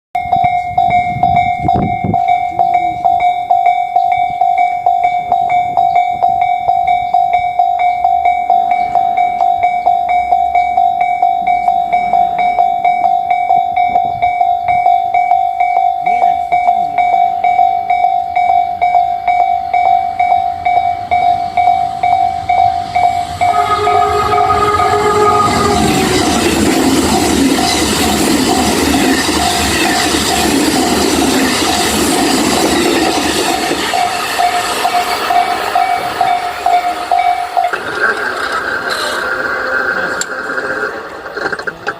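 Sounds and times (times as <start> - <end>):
level-crossing warning bell: 0.2 - 40.7
approaching train rumble: 0.2 - 41.9
train horn: 23.0 - 28.1.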